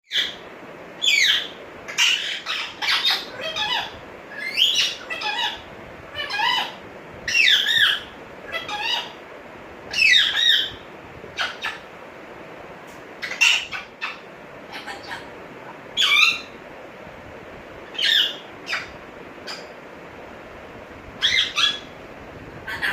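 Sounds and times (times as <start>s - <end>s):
parrot shrill calls and whistles: 1.0s - 5.6s, 6.2s - 9.2s, 9.9s - 10.8s, 13.2s - 15.2s, 16.0s - 16.6s, 17.9s - 19.7s, 21.2s - 21.9s.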